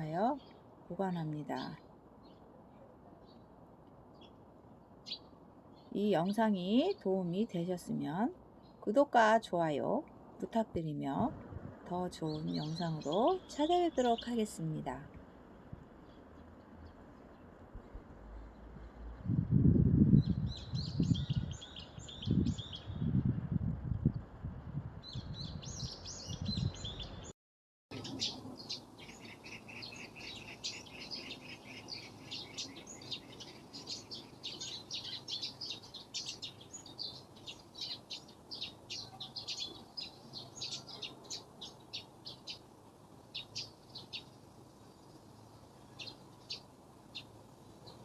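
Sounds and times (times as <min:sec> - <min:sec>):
birds chirping: 0:12.1 - 0:15.1, 0:20.2 - 0:23.1, 0:25.0 - 0:27.3, 0:27.9 - 0:48.0.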